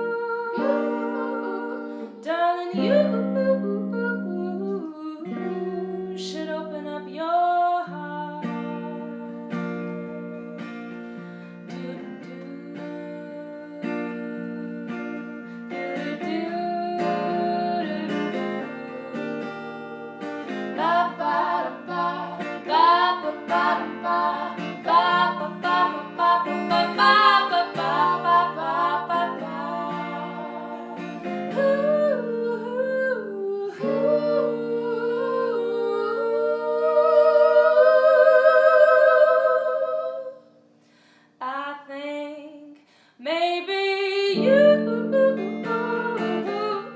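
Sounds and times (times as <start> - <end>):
person singing: 0.0 - 10.7, 11.6 - 40.4, 41.4 - 46.9
acoustic guitar strumming: 7.9 - 37.1, 44.3 - 46.9.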